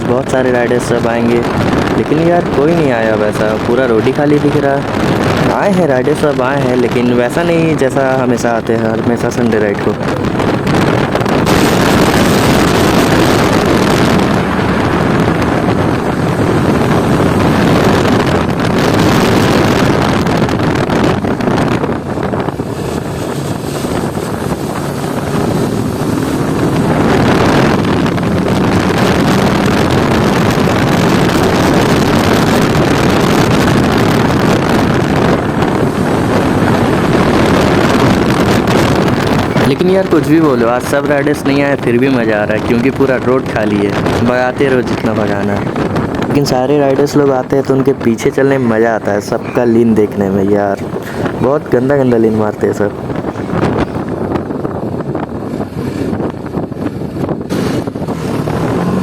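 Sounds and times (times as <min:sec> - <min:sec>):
motorcycle engine running: 0:00.0 - 0:44.2, 0:53.0 - 0:59.0
wind rushing on microphone: 0:00.0 - 0:59.0.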